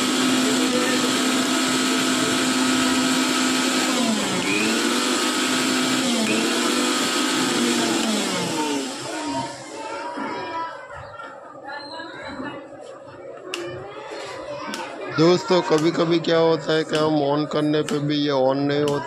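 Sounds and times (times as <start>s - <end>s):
small electric motor running: 0.0s - 9.8s.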